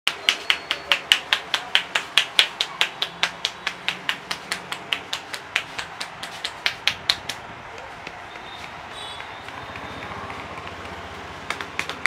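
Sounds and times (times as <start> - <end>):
hands tapping on a head: 0.1 - 12.0.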